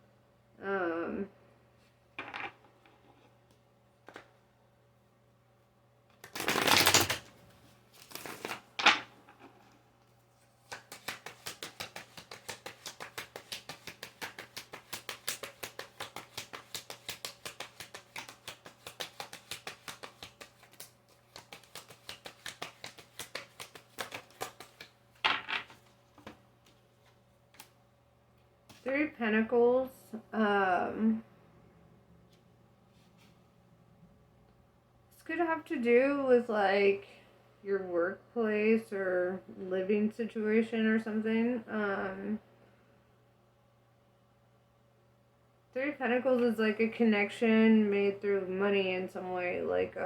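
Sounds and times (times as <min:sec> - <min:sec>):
cards flicked rapidly: 0:10.6 - 0:24.9
cards sweeping: 0:10.6 - 0:25.0.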